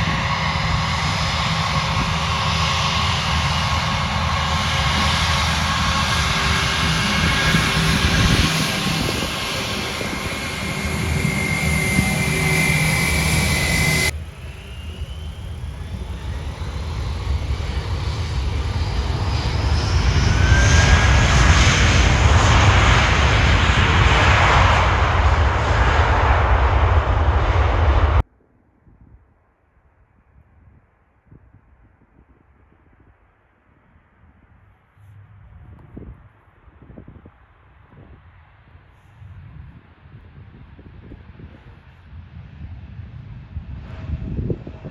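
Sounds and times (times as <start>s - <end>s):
aircraft approaching with gliding whine: 0.0s - 28.2s, 33.6s - 44.9s
airliner engines whining: 0.0s - 28.2s.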